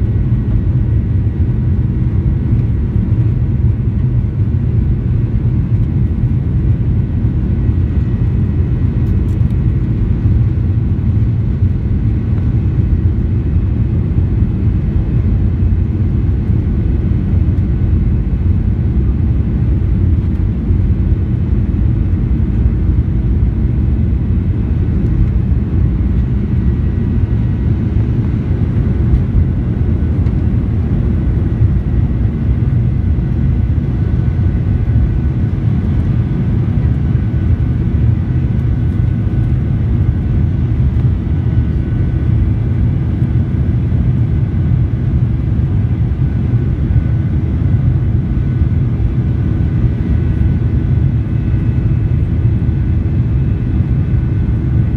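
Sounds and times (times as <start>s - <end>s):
jet engine low rumble: 0.0s - 54.9s.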